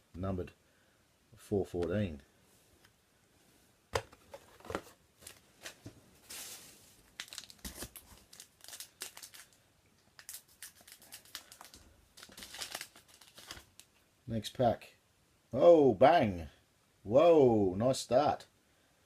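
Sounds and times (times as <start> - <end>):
card wrappers crinkling and tearing: 4.6 - 14.0.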